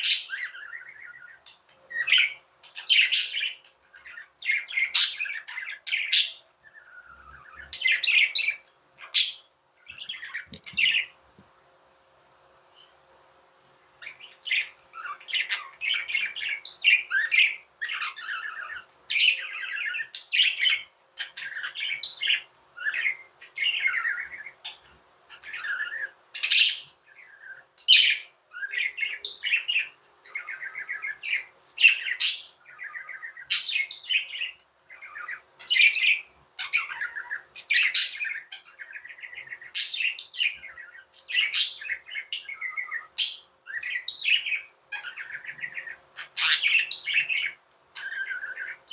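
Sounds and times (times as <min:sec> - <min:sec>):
budgerigars warbling and chirping: 0:00.0 - 0:11.2, 0:13.9 - 0:48.9.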